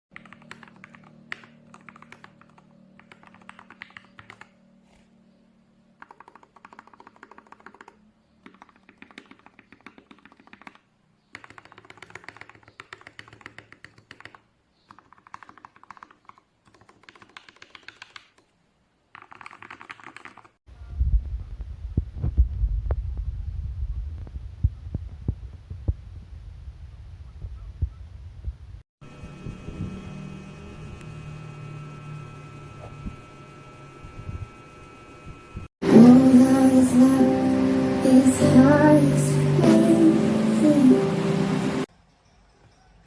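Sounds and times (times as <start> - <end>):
typing on mechanical keyboard: 0.2 - 4.6, 6.0 - 18.5, 19.1 - 20.6
low throbbing hum: 27.5 - 39.6.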